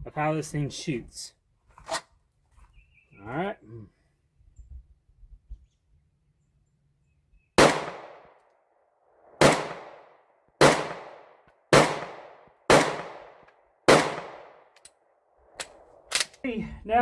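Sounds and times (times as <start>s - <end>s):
pistol shots with echo: 7.6s - 8.4s, 9.4s - 14.8s.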